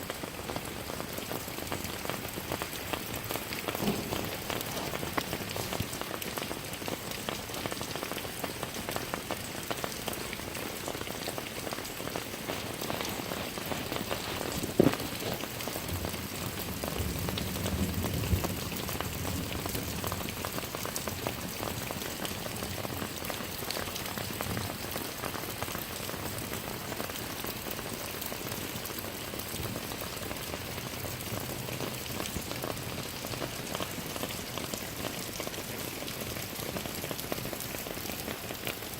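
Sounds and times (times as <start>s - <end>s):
rain patter: 0.0s - 38.9s.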